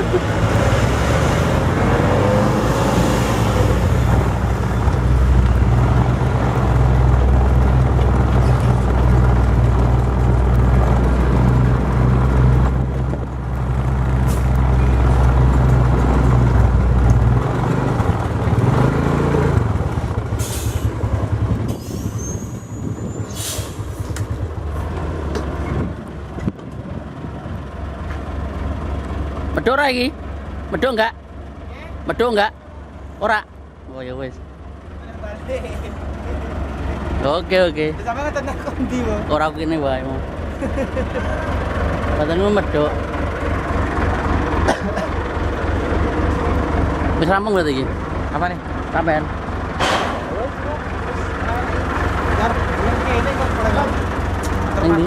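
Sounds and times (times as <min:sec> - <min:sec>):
heavy diesel engine running: 0:00.0 - 0:55.0
sharp air hisses: 0:20.4 - 0:21.0, 0:21.7 - 0:24.1, 0:49.8 - 0:50.4
high squeal: 0:21.7 - 0:24.0.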